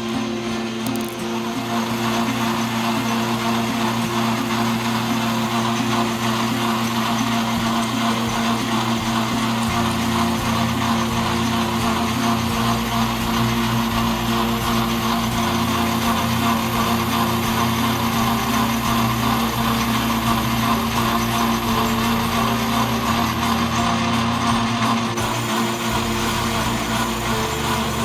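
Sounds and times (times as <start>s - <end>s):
metal lathe humming and whirring: 0.0s - 28.0s.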